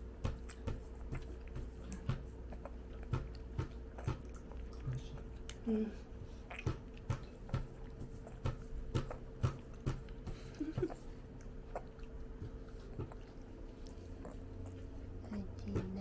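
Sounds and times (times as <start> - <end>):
faint steady hum: 0.0 - 16.0
moist chewing clicks: 0.3 - 5.7, 10.8 - 16.0.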